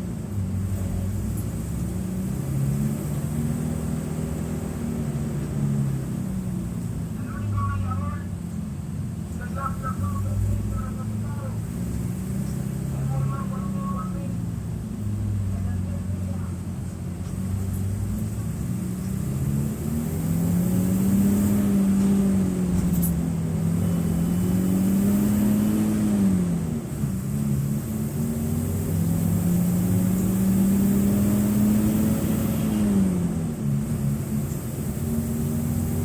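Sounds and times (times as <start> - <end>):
bus diesel engine pulling under load: 0.0 - 36.0.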